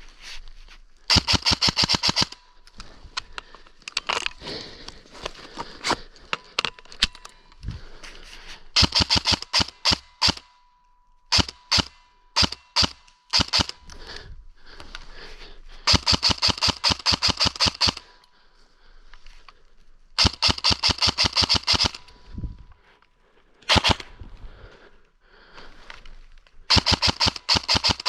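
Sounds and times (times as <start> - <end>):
airsoft rifle firing: 1.1 - 2.4, 8.8 - 10.5, 11.3 - 13.8, 15.9 - 18.1, 20.2 - 22.1, 23.7 - 24.2, 26.7 - 28.0.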